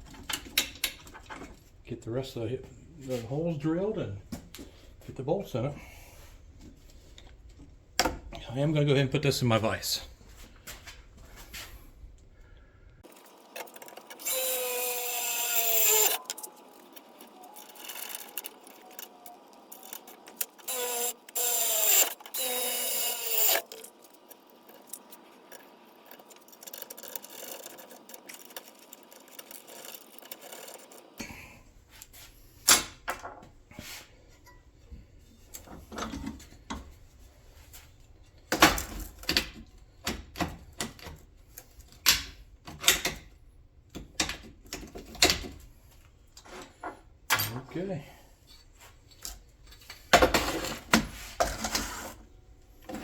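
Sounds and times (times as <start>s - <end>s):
power drill drilling: 13.2s - 24.0s.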